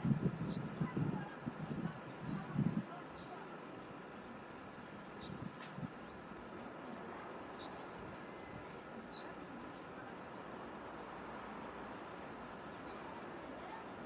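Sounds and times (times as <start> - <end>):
steady outdoor hiss: 0.0 - 14.0
bird chirping: 0.5 - 1.0, 3.2 - 3.8, 4.6 - 6.8, 7.5 - 9.7.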